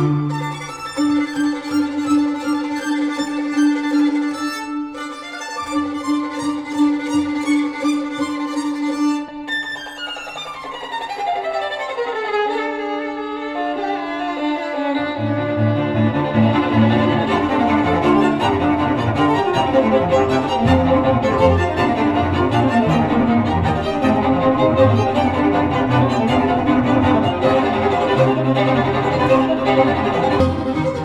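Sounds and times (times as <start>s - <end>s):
low strings: 0.0s - 31.0s
violin over loudspeakers: 11.6s - 31.0s.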